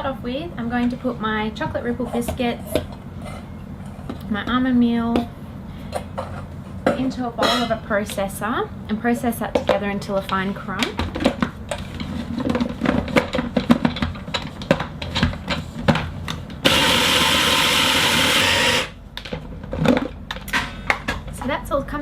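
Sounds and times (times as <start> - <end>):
food processor grinding: 16.6 - 19.0.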